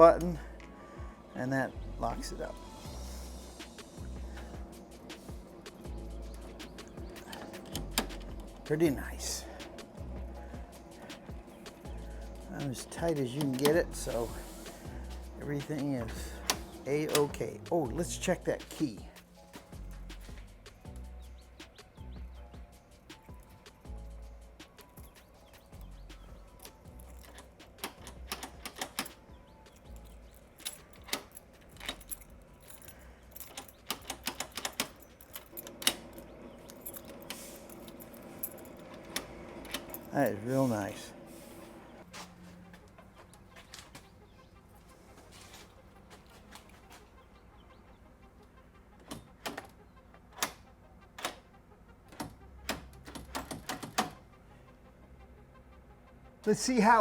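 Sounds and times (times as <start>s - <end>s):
keys jangling: 4.6s - 21.1s, 24.7s - 41.0s, 52.2s - 54.2s
sharp metallic lock clicks: 5.6s - 8.9s, 12.8s - 14.2s, 15.7s - 17.7s, 24.7s - 32.9s, 33.5s - 40.3s, 49.0s - 51.5s, 52.1s - 54.2s
door lock clicks and knocks: 6.7s - 8.6s, 16.0s - 17.5s, 26.6s - 29.6s, 33.5s - 36.3s, 49.0s - 50.6s, 52.1s - 54.2s.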